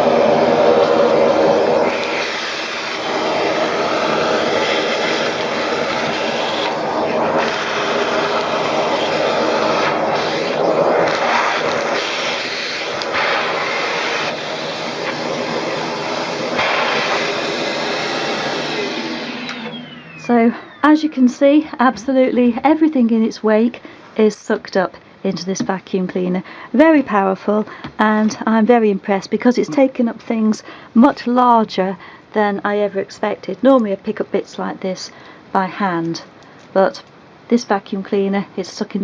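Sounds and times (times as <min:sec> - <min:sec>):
vacuum cleaner running: 0:00.0 - 0:23.0.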